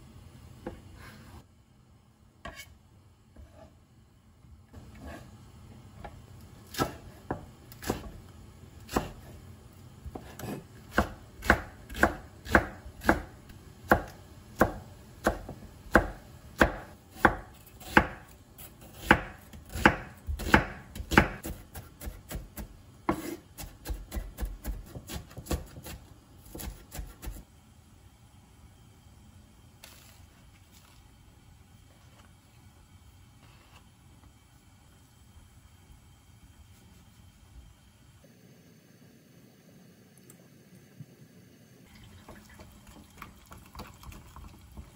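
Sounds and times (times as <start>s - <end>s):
knife chopping on cutting board: 6.7s - 8.2s, 8.9s - 9.4s, 10.1s - 13.3s, 13.9s - 27.4s.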